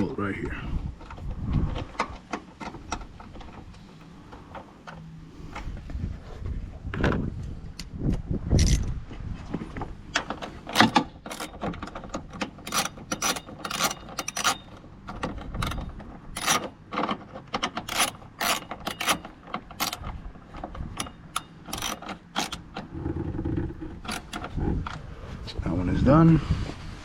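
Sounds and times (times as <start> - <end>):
hand ratchet clicking: 10.6 - 22.9, 24.0 - 24.5.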